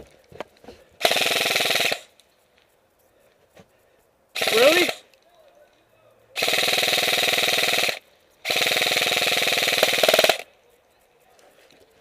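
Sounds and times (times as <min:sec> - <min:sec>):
airsoft gun automatic bursts: 0:01.0 - 0:02.2, 0:04.3 - 0:05.1, 0:06.4 - 0:10.5.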